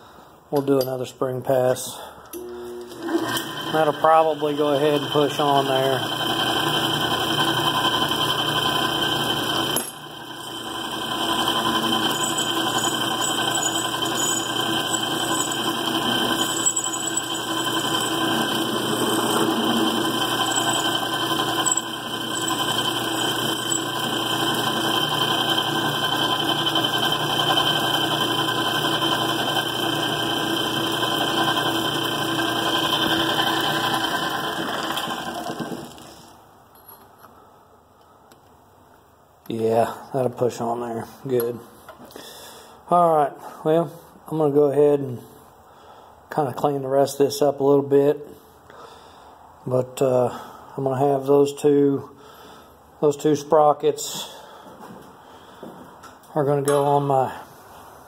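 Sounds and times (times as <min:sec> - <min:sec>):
metal lathe running: 0:02.4 - 0:36.0.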